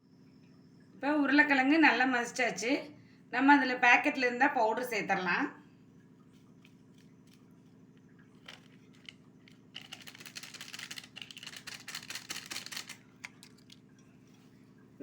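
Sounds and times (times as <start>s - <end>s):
plastic packet crinkling: 8.4s - 14.0s.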